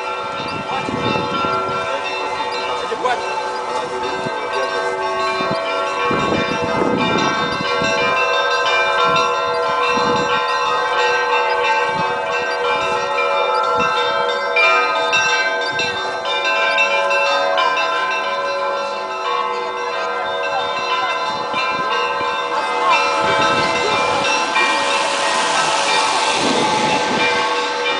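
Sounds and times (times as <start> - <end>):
large bells ringing: 0.0 - 27.9
small church bells struck quickly: 0.0 - 27.9.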